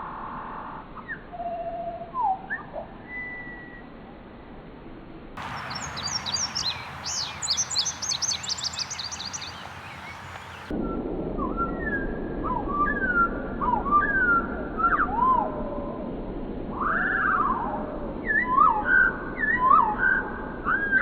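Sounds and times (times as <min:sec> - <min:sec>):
background hiss: 0:05.4 - 0:10.7
slowed bird calls: 0:05.4 - 0:10.7.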